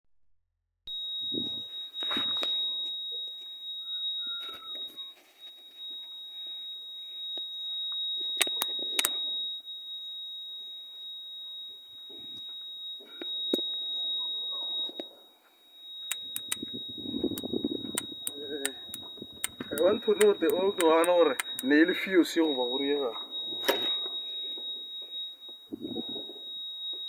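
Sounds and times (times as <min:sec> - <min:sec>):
high-pitched electronic buzzer tone: 0:00.9 - 0:27.0
sharp clicks: 0:08.4 - 0:09.2, 0:16.1 - 0:21.9.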